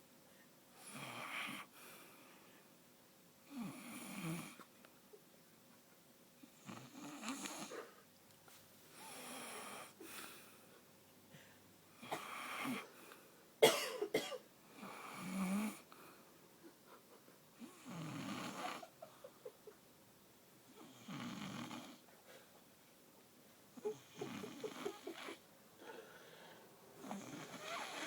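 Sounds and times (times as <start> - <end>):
person snoring: 23.8 - 26.0.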